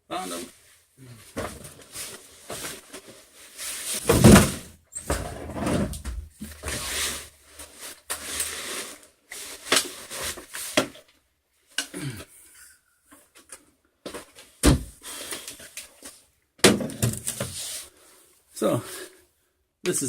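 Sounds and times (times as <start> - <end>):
scraping and knocking of objects: 1.3 - 11.1, 13.2 - 18.0.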